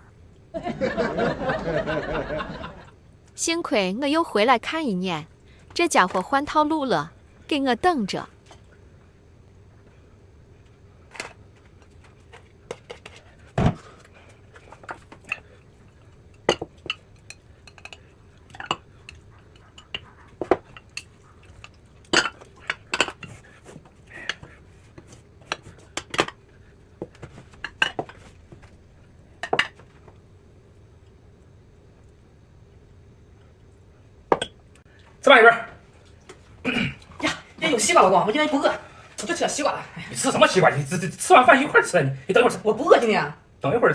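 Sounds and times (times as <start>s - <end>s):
tableware clinking and knocking: 16.3s - 23.4s, 29.4s - 29.9s, 34.3s - 34.6s.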